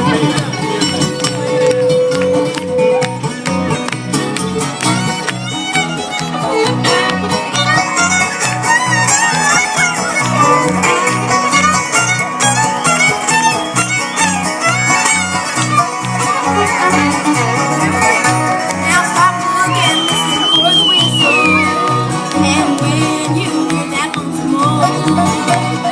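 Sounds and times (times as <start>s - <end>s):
banjo: 0.0s - 25.9s
fiddle sliding melody: 0.0s - 25.9s
guitar: 0.0s - 25.9s.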